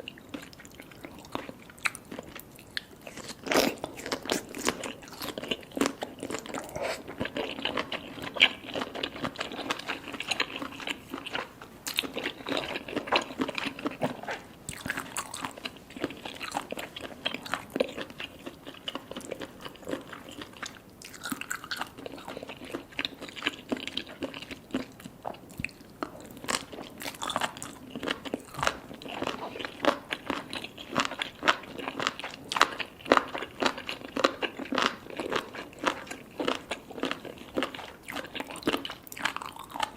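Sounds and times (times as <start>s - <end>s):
soft crunchy chewing: 0.0s - 39.9s.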